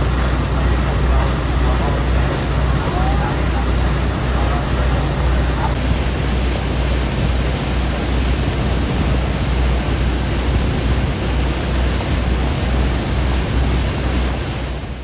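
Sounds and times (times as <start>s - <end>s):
wind buffeting microphone: 0.0s - 13.9s.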